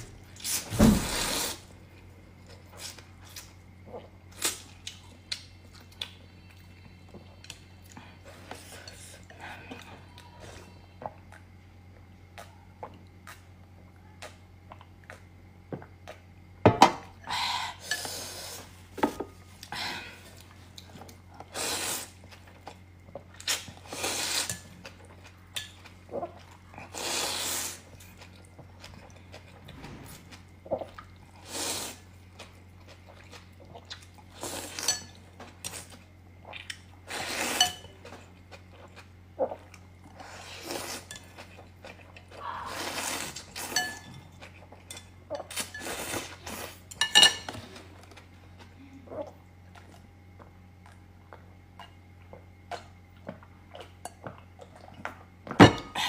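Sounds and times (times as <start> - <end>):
slurping and chewing: 19.6 - 55.2.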